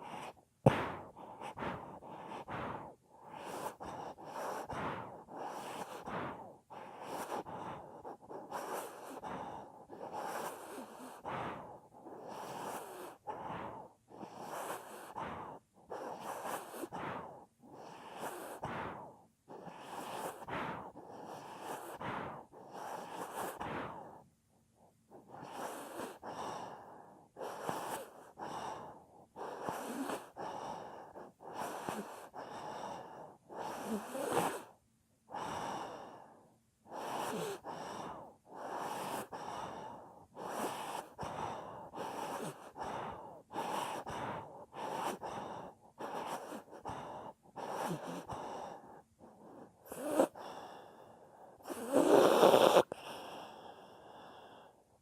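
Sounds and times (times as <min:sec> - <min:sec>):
dog snoring: 0:06.8 - 0:24.1, 0:25.2 - 0:26.8, 0:27.4 - 0:34.7, 0:36.9 - 0:48.8, 0:49.4 - 0:50.6, 0:51.6 - 0:53.4.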